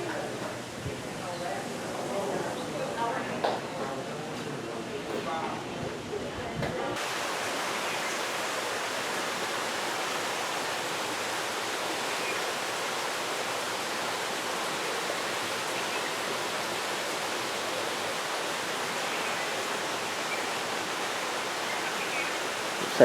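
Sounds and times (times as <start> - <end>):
running water hiss: 7.0 - 23.0.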